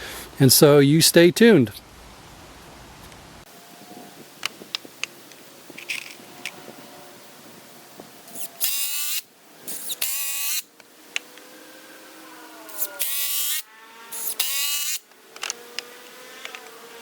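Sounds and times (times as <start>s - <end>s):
cordless drill driving screws: 8.3s - 10.6s, 12.7s - 15.6s.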